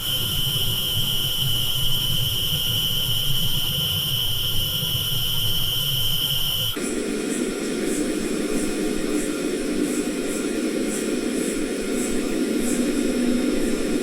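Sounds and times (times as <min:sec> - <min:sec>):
dental drill whining: 0:00.0 - 0:06.8.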